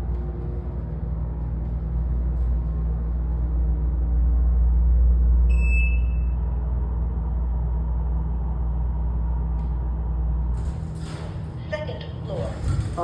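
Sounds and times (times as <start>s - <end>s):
elevator car rumbling: 0.0s - 13.0s
short electronic beep: 5.5s - 6.3s.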